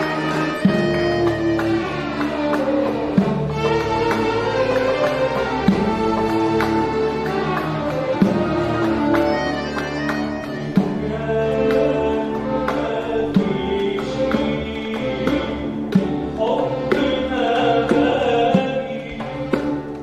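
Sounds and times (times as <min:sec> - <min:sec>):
drum strikes: 0:00.0 - 0:17.2
music ensemble playing melody: 0:00.0 - 0:20.0.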